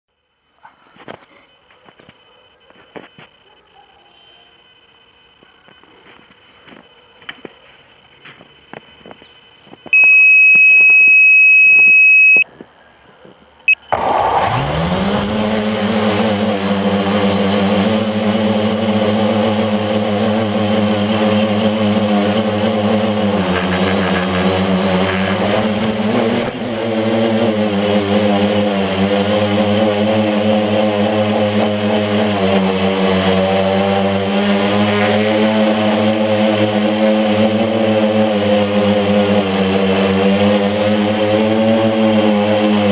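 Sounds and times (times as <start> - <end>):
drone propellers whining: 10.0 - 12.4, 13.7 - 42.9
loud electronic beep: 10.0 - 12.4, 13.7 - 16.6, 25.4 - 27.7.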